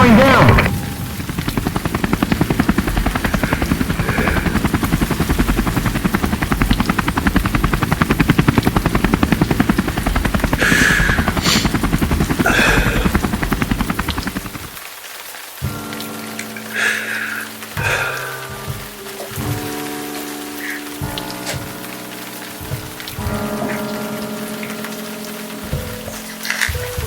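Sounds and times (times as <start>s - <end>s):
helicopter rotor chopping: 0.0s - 14.8s.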